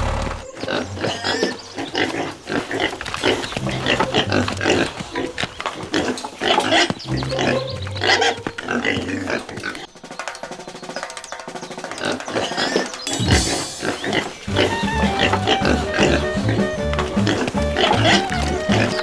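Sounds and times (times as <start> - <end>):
pigs grunting and squealing: 0.0 - 9.9, 11.9 - 19.0.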